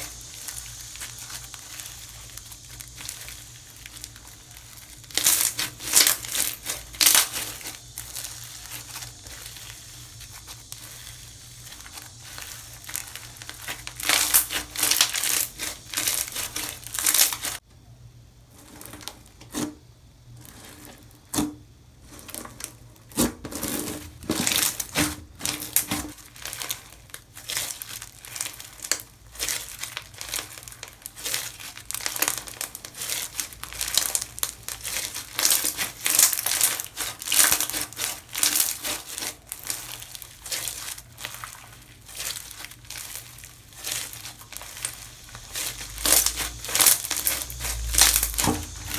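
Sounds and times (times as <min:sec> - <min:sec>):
slime squished by hand: 0:00.0 - 0:17.6, 0:23.1 - 0:48.9.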